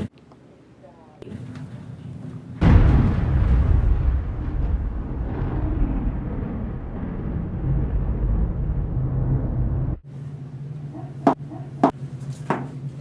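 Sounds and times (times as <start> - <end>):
steady low hum: 0.0 - 13.0
deep rumbling explosion: 2.6 - 10.0.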